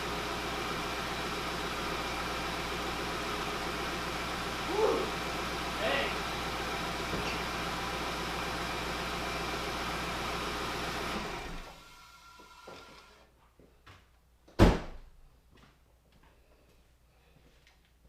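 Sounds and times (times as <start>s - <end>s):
car engine idling: 0.0s - 12.2s
sharp loud thump: 14.6s - 15.1s.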